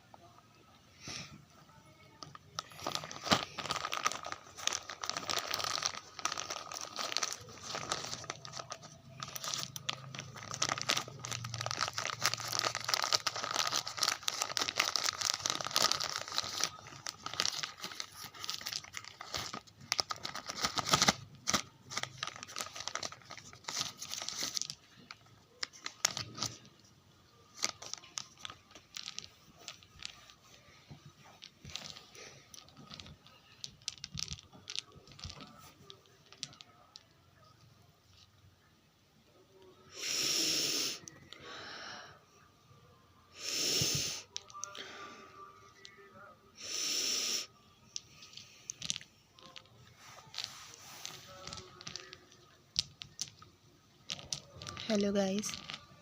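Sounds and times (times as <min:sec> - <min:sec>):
packaging crinkling and tearing: 0:02.1 - 0:26.9, 0:27.5 - 0:30.6, 0:31.2 - 0:37.0, 0:48.0 - 0:53.5, 0:54.1 - 0:56.0.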